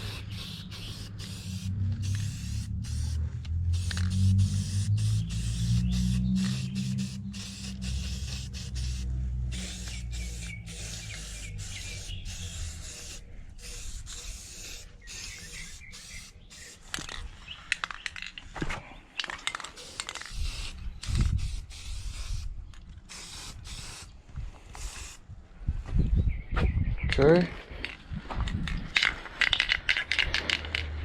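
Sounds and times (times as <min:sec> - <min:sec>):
spray paint hissing: 0:00.0 - 0:17.2, 0:19.5 - 0:22.5, 0:23.1 - 0:25.2.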